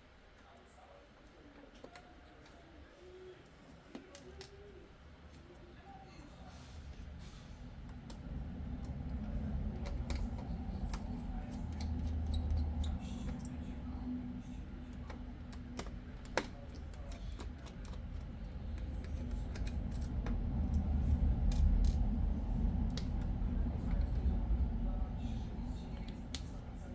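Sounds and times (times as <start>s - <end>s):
steady low hum: 0.0s - 26.9s.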